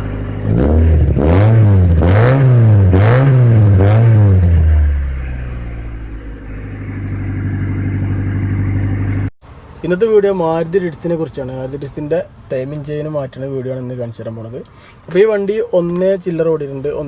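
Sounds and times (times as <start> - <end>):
car engine revving and idling: 0.0 - 9.8.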